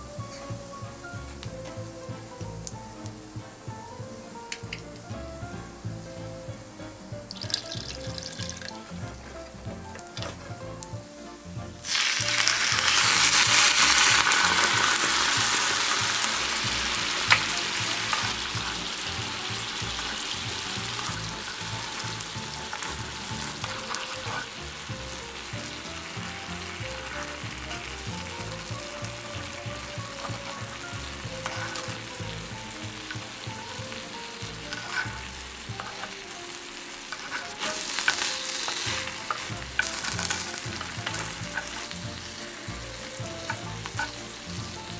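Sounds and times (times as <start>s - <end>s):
food sizzling in hot oil: 0.0s - 44.9s.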